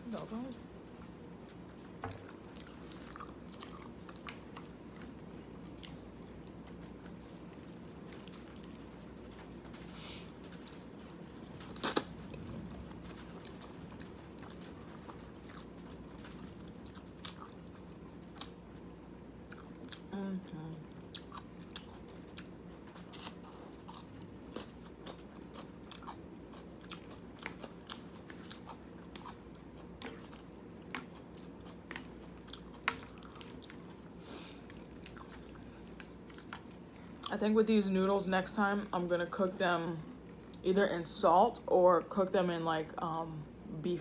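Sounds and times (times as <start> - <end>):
close-up chewing noodles: 0.9 - 20.2, 20.9 - 37.4
wet mouth clicks: 11.7 - 12.1.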